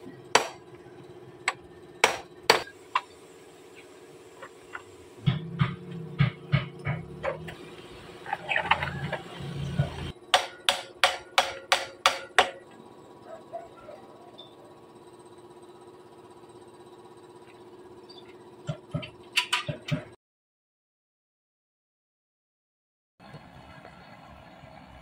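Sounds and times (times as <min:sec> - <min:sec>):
sharp knocks: 0:05.2 - 0:07.2.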